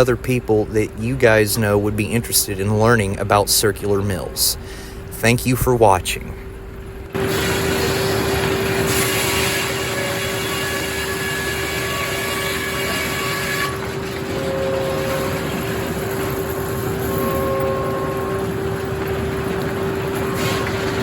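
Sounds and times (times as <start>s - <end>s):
sawmill saw whining: 7.2s - 21.0s.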